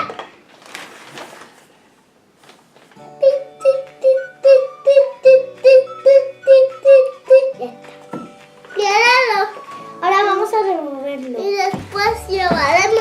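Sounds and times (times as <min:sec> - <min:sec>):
bouncy background music: 0:03.0 - 0:13.0.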